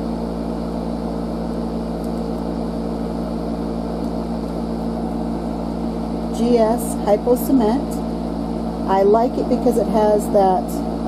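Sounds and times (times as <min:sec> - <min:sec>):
cooler fan motor humming: 0:00.0 - 0:11.0.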